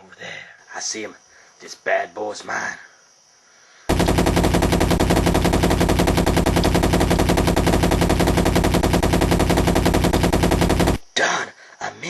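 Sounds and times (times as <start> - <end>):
machine-gun automatic fire: 3.9 - 11.1.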